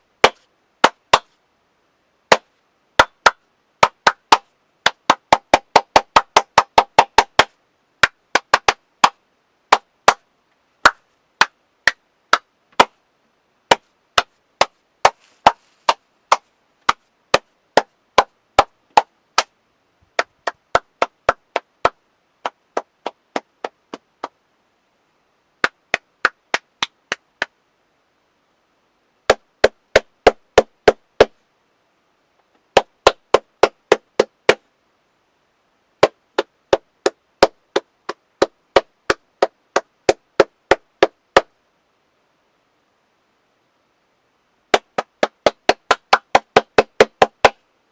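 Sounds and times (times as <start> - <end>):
person clapping hands: 3.0 - 10.2, 20.2 - 24.4, 25.6 - 27.5, 36.0 - 41.5, 44.8 - 47.6.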